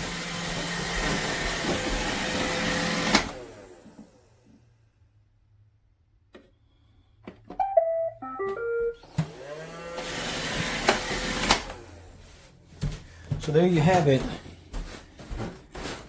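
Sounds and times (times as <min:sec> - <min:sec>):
robot vacuum electronic beeps: 0:07.6 - 0:09.1.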